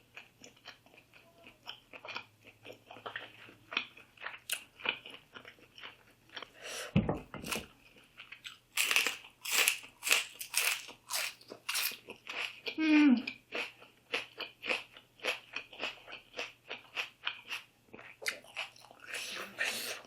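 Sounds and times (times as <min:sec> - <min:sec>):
crunchy food chewing: 0:00.0 - 0:06.6, 0:07.7 - 0:20.0
low thud: 0:07.0 - 0:07.5.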